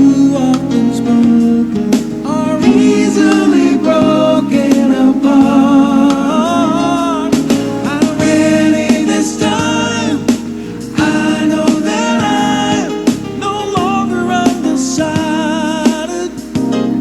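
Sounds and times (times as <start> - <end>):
person singing without words: 0.0 - 17.0
pop ballad with guitar: 0.0 - 17.0.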